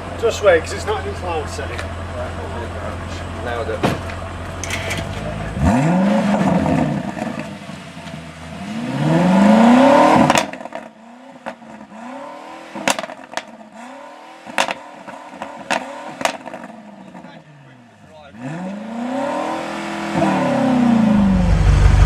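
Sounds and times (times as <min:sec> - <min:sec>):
car engine revving: 0:00.0 - 0:22.0
exhaust cracks and pops: 0:10.2 - 0:11.6.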